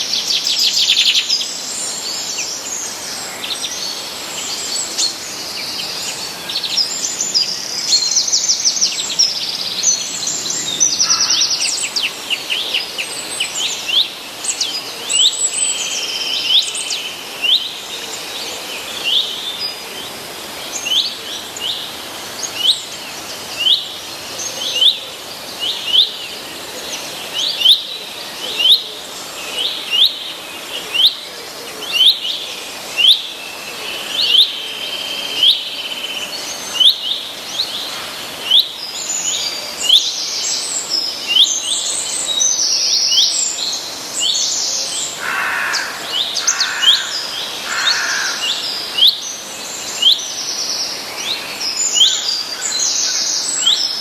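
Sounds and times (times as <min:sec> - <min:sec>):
steady background hiss: 0:00.0 - 0:54.0.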